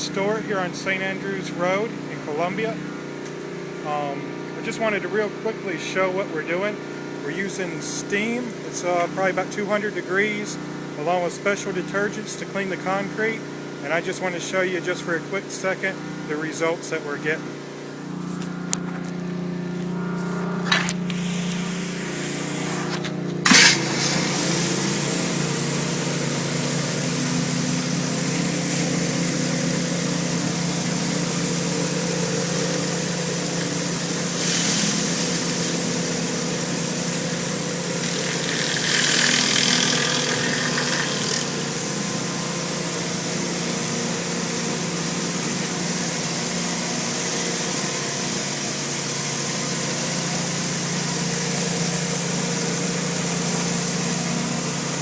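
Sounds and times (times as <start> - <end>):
pressure washer engine running: 0.0 - 55.0
short sharp loud burst: 19.4 - 25.1
pressure washer hiss: 21.1 - 55.0.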